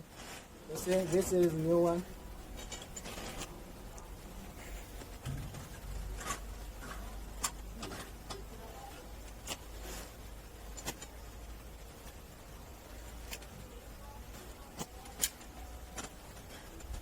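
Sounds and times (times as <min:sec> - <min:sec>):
faint low hum: 0:00.0 - 0:17.0.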